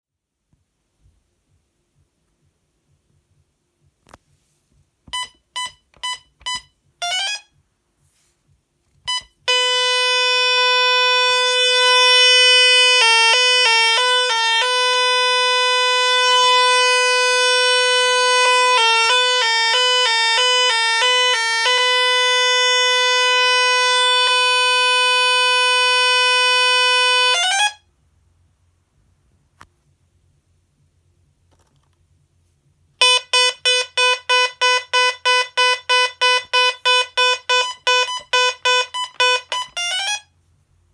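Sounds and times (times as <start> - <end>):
short alarm beeps: 5.1 - 7.5, 9.1 - 10.5
two-tone alarm warble: 5.1 - 7.5, 9.1 - 27.8, 33.0 - 40.2
loud steady alarm tone: 9.1 - 27.8, 33.0 - 40.2.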